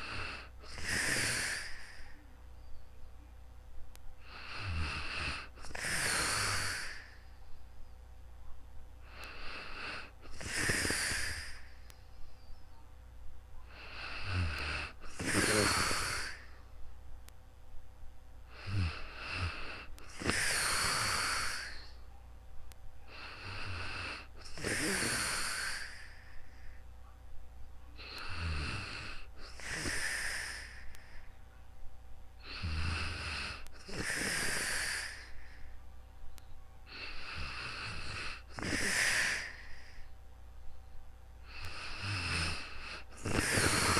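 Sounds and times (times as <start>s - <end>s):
person snoring: 0.0s - 2.2s, 4.2s - 7.2s, 9.0s - 11.8s, 13.7s - 16.5s, 18.5s - 22.0s, 23.1s - 26.4s, 28.0s - 31.2s, 32.4s - 35.7s, 36.9s - 40.1s, 41.4s - 43.9s.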